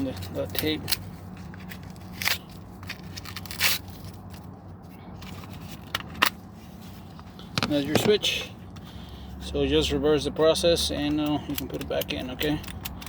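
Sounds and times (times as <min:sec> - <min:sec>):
tape peeling and ripping: 0:00.2 - 0:04.5.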